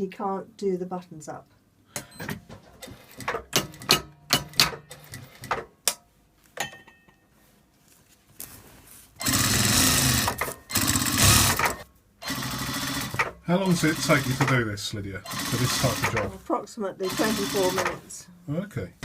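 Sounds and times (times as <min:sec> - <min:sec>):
sewing machine stitching: 0:02.7 - 0:05.7, 0:09.2 - 0:14.7, 0:15.3 - 0:16.4, 0:17.0 - 0:18.0.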